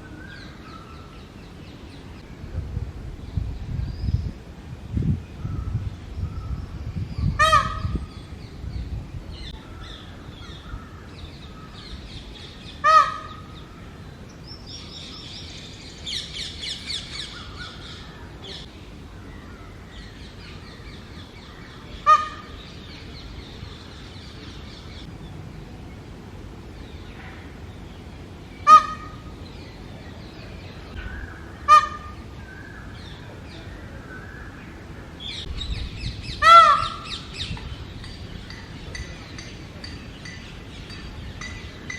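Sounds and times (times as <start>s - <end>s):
peacock honking calls: 7.4s - 8.0s, 12.8s - 13.7s, 22.0s - 22.7s, 28.6s - 29.3s, 31.2s - 32.2s, 36.2s - 37.7s.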